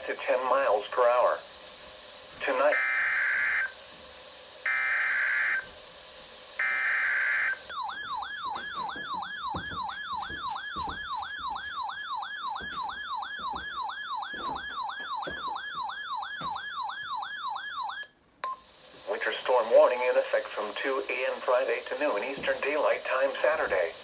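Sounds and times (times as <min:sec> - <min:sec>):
siren-like electronic alert tone: 0:02.6 - 0:03.8, 0:04.6 - 0:05.7, 0:06.6 - 0:18.1.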